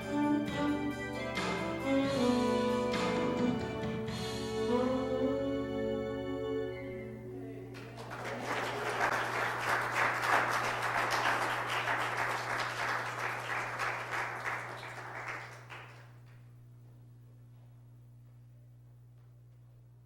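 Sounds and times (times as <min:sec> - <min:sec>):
congregation applauding: 0:07.8 - 0:16.4.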